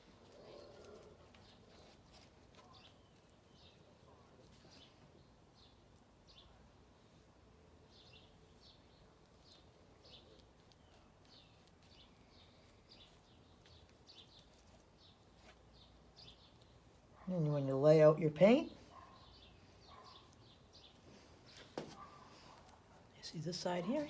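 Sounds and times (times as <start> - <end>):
small bird chirping: 7.9 - 17.3, 18.7 - 24.0.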